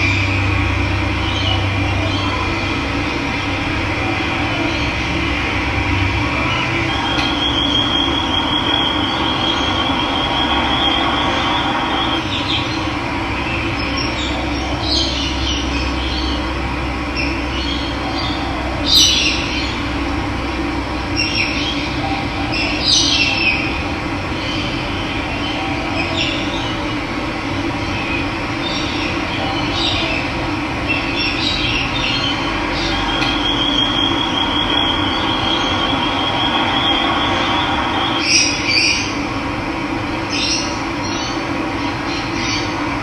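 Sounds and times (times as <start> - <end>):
high-pitched trill: 0.0 - 13.6, 32.1 - 39.3
birds chirping: 0.0 - 20.0, 27.6 - 39.3.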